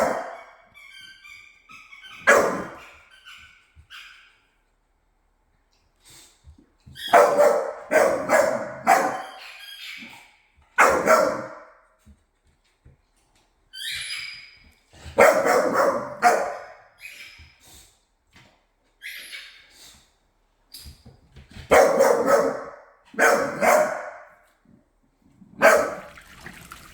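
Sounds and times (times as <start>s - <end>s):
dogs barking: 0.0s - 0.6s, 2.0s - 4.1s, 7.0s - 10.1s, 10.8s - 11.7s, 15.2s - 16.9s, 21.7s - 24.3s, 25.6s - 26.2s.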